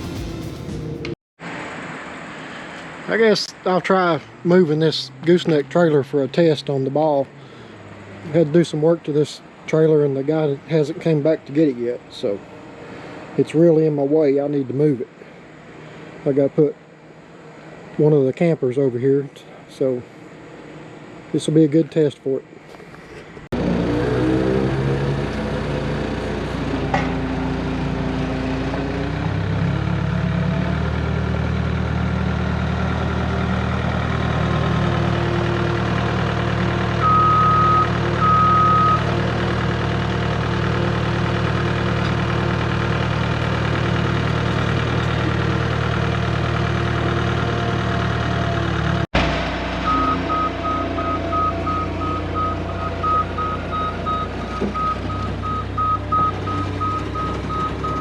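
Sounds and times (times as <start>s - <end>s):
skid steer engine running: 22.9s - 58.0s
backup alarm beeping: 37.0s - 39.1s, 49.9s - 58.0s.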